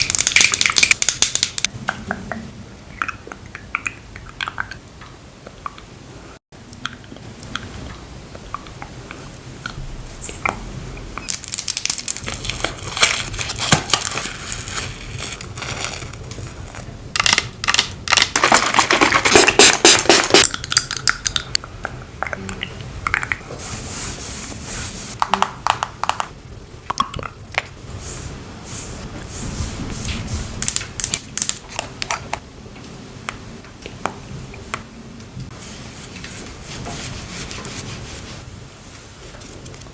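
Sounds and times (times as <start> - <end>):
crackly scratching and crunching: 11.2 - 20.4
makeup products tapping and clicking: 25.2 - 26.3.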